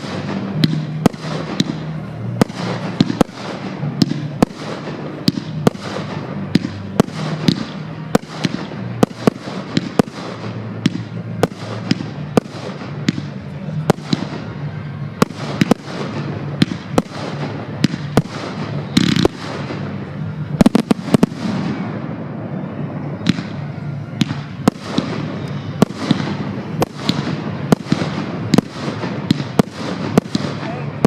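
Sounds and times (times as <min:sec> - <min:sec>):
firework bangs: 0:00.0 - 0:31.0.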